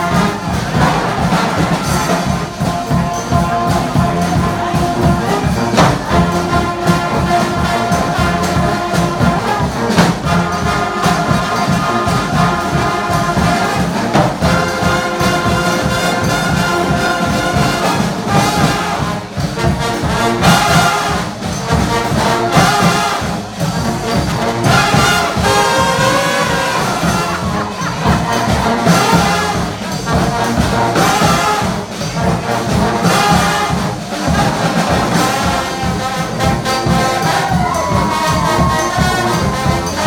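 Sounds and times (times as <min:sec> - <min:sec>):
brass band playing: 0:00.0 - 0:40.0.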